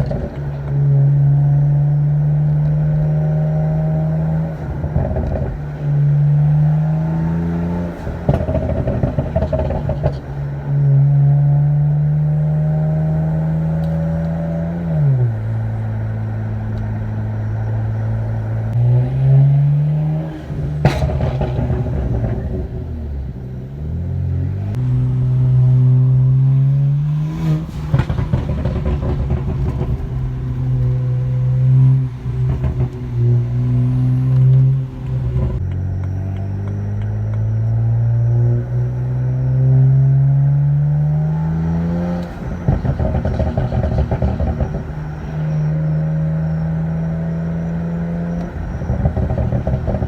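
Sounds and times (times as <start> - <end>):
exhaust pop: 0.0 - 0.8, 1.9 - 10.5, 18.7 - 37.5, 40.9 - 50.0
car exhaust revving: 0.0 - 50.0
exhaust crackles: 0.0 - 50.0.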